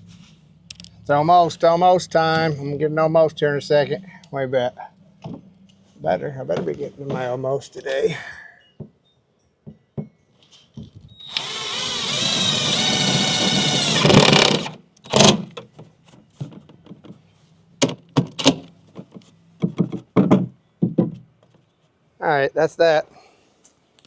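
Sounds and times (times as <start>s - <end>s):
power drill boring: 11.2s - 15.4s
knocks and clatters: 17.8s - 21.6s.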